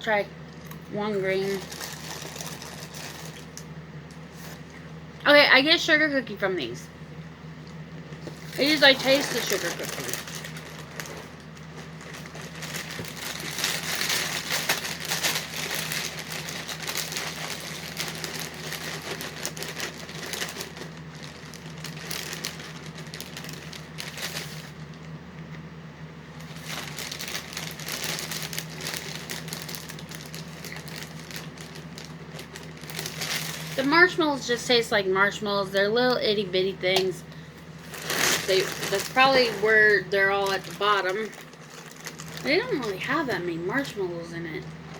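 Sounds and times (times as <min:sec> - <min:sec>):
cereal crunching while chewed: 0:00.6 - 0:04.9, 0:07.7 - 0:25.7, 0:26.4 - 0:33.8, 0:37.8 - 0:39.6, 0:40.5 - 0:42.7.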